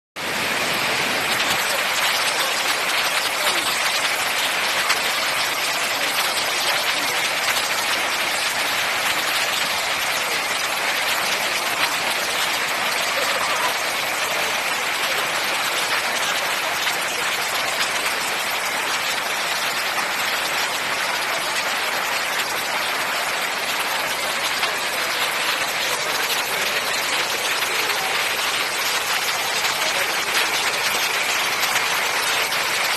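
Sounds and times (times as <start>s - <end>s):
waterfall rushing: 0.2s - 32.9s.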